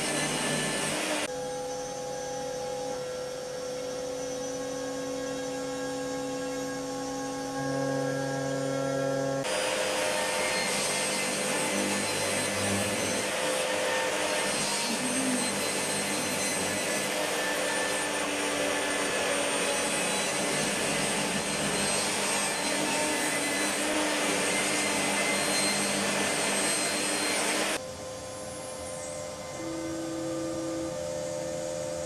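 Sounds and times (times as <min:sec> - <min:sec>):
electric workshop machine running: 0:00.0 - 0:01.3, 0:04.1 - 0:27.8.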